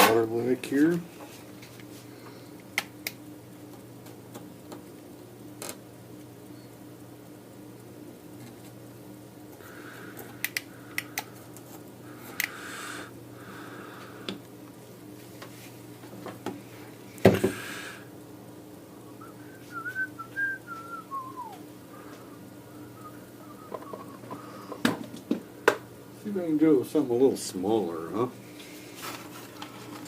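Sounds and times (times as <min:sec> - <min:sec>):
person whistling softly: 0:19.0 - 0:21.6, 0:22.8 - 0:24.7.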